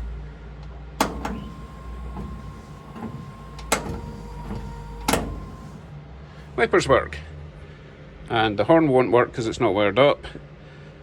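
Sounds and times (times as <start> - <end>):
switch clicks: 1.0 - 5.9
wiper motor whining: 1.0 - 6.0.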